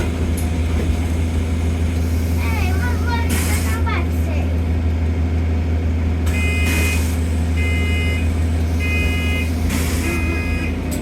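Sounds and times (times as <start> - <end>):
bus engine humming: 0.0 - 11.0
electronic warning beeps: 6.4 - 7.0, 7.6 - 10.8.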